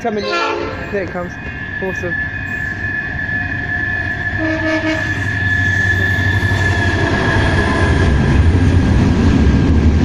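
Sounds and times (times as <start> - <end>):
high-pitched squeal: 0.8 - 8.4.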